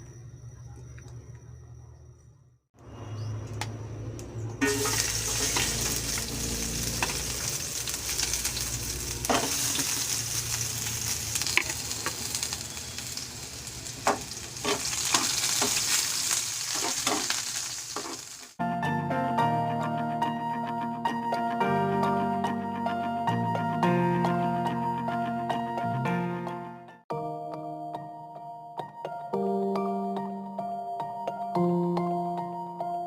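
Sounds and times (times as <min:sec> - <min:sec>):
meat sizzling in a pan: 0:04.6 - 0:18.6.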